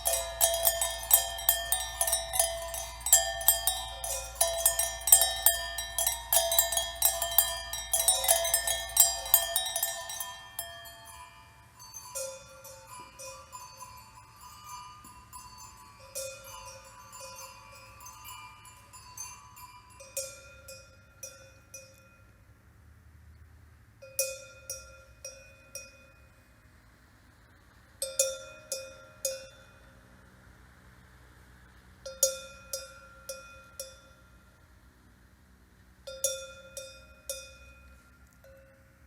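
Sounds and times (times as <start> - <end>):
small metal objects ringing: 0.0 - 22.4.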